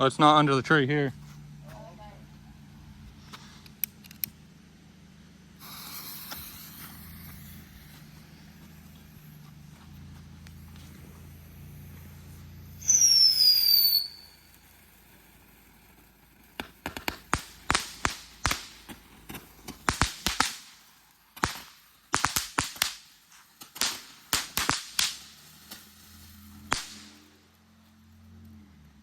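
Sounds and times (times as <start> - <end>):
firework cracks and pops: 5.6 - 27.8
firework whistle falling in pitch: 12.8 - 14.6.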